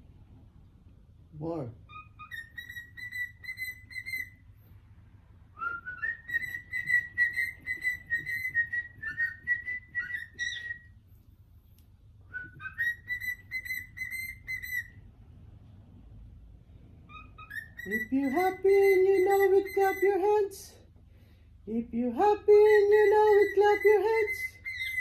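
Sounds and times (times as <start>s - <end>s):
cockatiel whistling: 1.9s - 4.5s, 5.5s - 11.0s, 12.3s - 15.0s, 17.1s - 20.5s, 22.6s - 25.0s.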